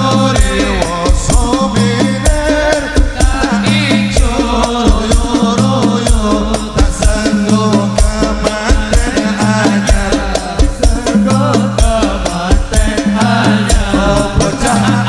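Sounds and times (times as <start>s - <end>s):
hand drum and shaker percussion: 0.0s - 15.0s
heavy bass hits: 13.8s - 15.0s.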